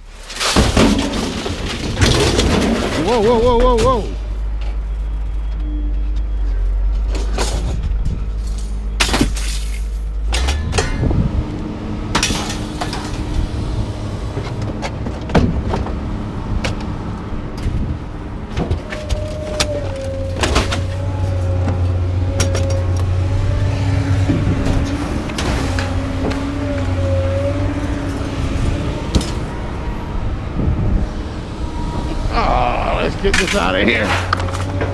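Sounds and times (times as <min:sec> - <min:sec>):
scrap metal banging and clanking: 0:00.2 - 0:04.0, 0:06.9 - 0:17.0, 0:18.5 - 0:30.9
vehicle engine running: 0:09.9 - 0:18.9.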